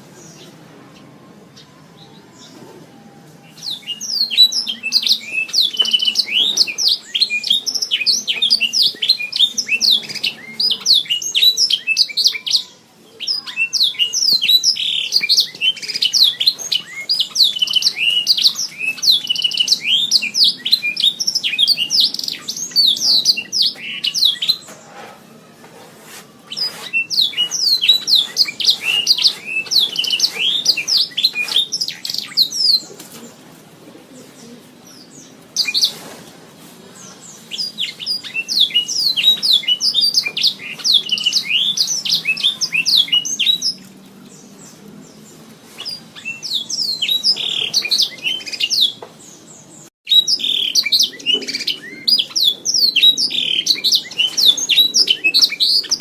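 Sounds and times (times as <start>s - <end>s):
canary singing trills: 0.0s - 25.3s, 26.4s - 33.0s, 34.1s - 36.1s, 37.0s - 56.0s.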